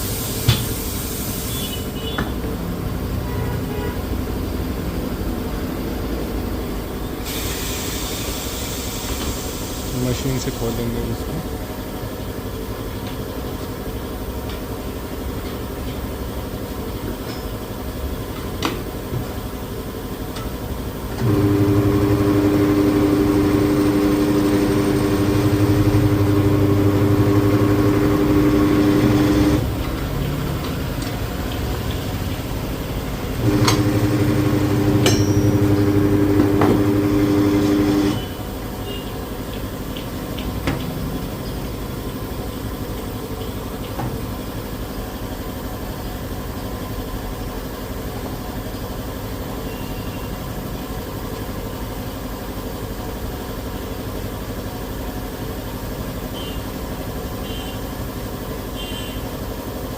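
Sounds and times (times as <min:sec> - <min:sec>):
tyre-changer machine motor running: 0:21.1 - 0:30.5, 0:32.8 - 0:38.4.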